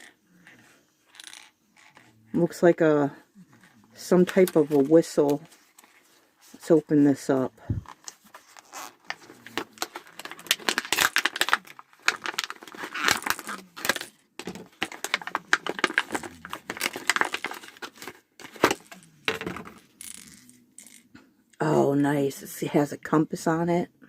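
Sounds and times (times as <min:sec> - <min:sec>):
plastic packaging crinkling and tearing: 0:07.9 - 0:19.1.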